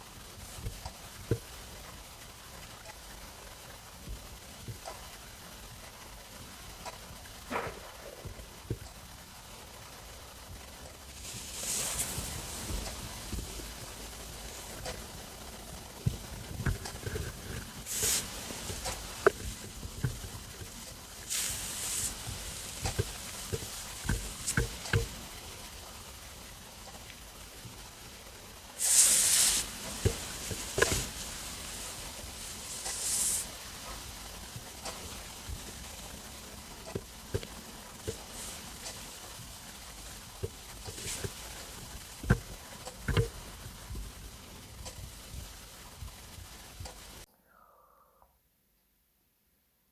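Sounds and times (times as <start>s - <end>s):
short hissing bursts: 0.0s - 47.3s
stomach gurgling: 7.2s - 9.4s, 11.3s - 26.0s, 27.1s - 48.4s.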